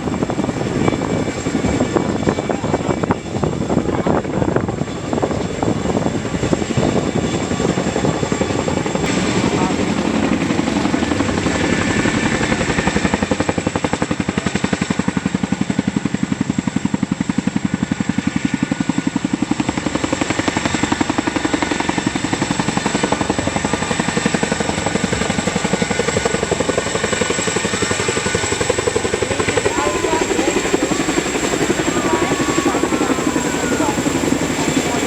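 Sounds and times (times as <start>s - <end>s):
helicopter rotor blade beat: 0.0s - 35.0s
turbine engine noise: 9.0s - 13.1s, 27.2s - 35.0s.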